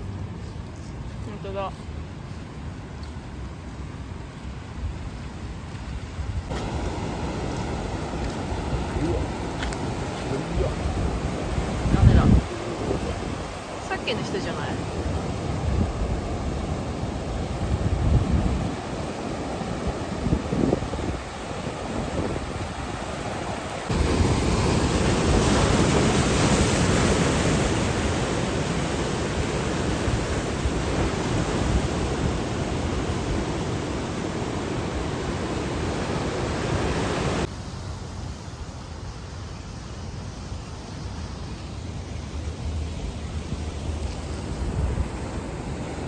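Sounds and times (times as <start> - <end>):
wind buffeting microphone: 4.6 - 37.5, 42.8 - 46.0
ocean surf rushing: 6.4 - 37.6, 42.6 - 46.0.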